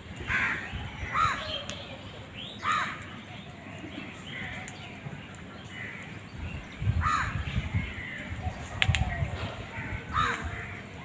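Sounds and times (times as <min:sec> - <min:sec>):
crows cawing: 0:00.3 - 0:01.5, 0:02.6 - 0:03.1, 0:05.7 - 0:06.1, 0:07.0 - 0:08.3, 0:09.7 - 0:10.8.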